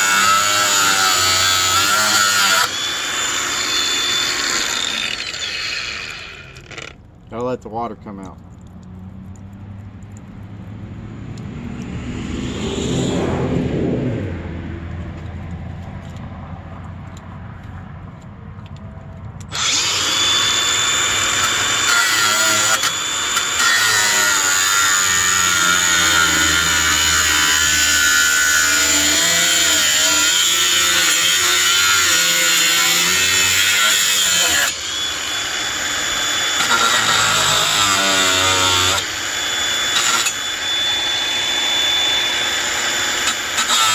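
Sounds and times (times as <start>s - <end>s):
angle grinder cutting metal tubing: 0.0s - 7.0s, 19.5s - 43.9s.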